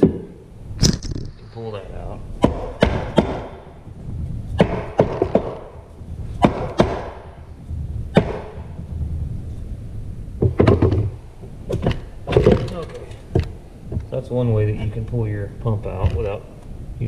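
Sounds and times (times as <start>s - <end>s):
metal knocks and clunks: 4.6s - 5.8s, 10.4s - 14.2s.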